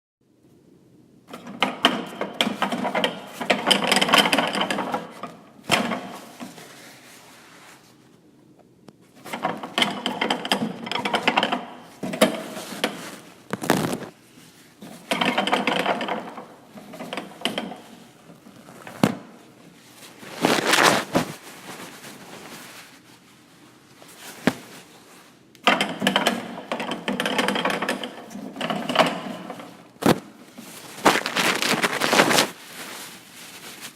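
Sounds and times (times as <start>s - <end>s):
toilet paper roll rattling: 30.6s - 33.0s
paper tearing: 31.0s - 32.6s.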